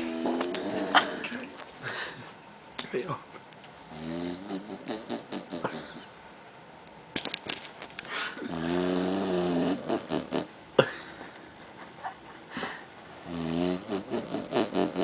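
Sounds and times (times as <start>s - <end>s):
man snoring: 0.0s - 1.4s, 3.8s - 5.8s, 8.4s - 10.5s, 13.2s - 15.0s.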